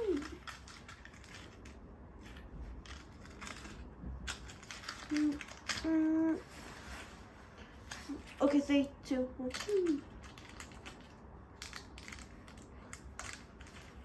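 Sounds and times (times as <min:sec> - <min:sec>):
person humming: 0:00.0 - 0:00.4, 0:05.0 - 0:06.5
handling clicks and scrapes: 0:00.0 - 0:08.5, 0:09.4 - 0:14.0.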